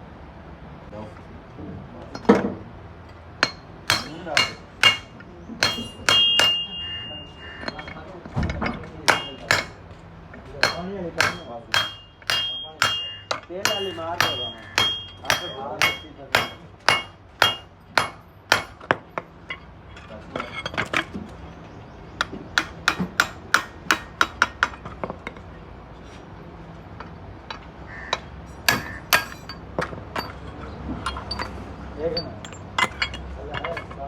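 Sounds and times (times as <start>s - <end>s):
hammer striking metal: 3.4s - 9.8s, 10.4s - 19.0s, 22.2s - 24.8s, 28.1s - 30.5s.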